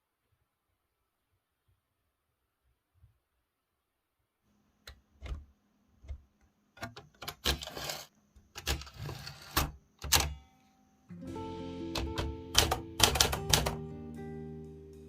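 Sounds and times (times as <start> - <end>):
typewriter keys clattering: 12.0 - 13.8.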